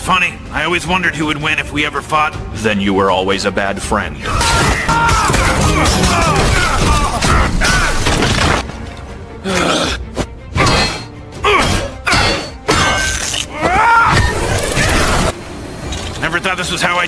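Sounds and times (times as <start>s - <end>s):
cartoon fight music: 4.2s - 8.7s, 9.4s - 15.4s
crashes and hits: 4.5s - 8.8s.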